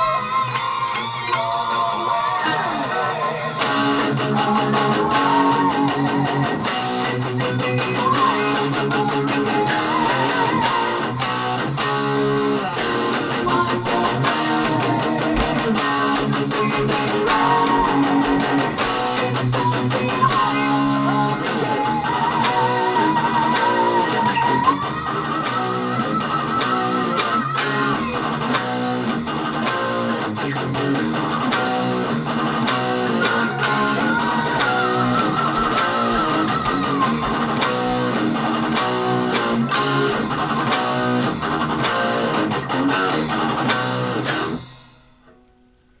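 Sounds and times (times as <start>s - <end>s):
band backing track: 0.0s - 45.3s
electric guitar lead: 0.0s - 46.0s
steady drum beat: 3.7s - 24.3s, 31.1s - 42.6s.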